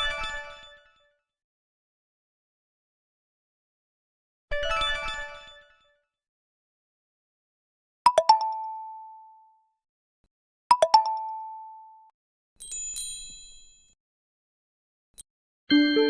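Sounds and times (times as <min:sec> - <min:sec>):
notification chimes: 0:10.7 - 0:11.4.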